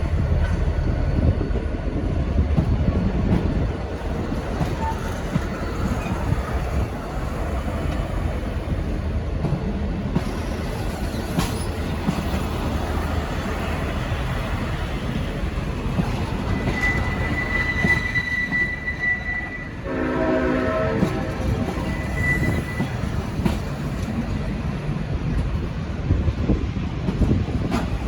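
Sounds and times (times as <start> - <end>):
train rumble: 0.0 - 28.0
thin high squeal: 16.4 - 23.2
train air horn blast: 16.8 - 23.1
wind on microphone: 19.8 - 28.0.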